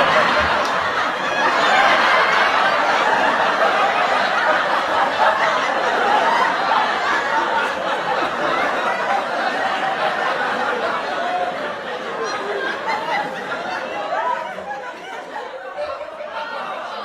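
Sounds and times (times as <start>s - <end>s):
applause: 0.0s - 3.0s
studio audience laughing: 0.0s - 17.0s.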